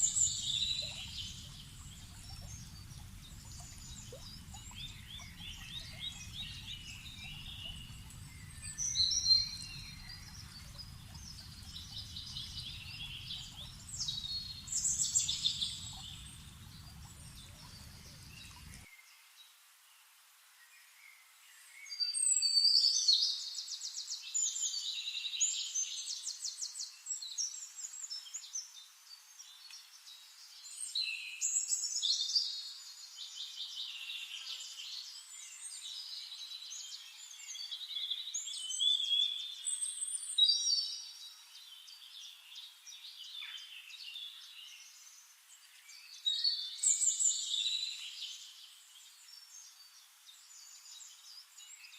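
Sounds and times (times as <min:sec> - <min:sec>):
low background rumble: 0:00.0 - 0:18.8
songbirds chirping and trilling: 0:00.0 - 0:19.1.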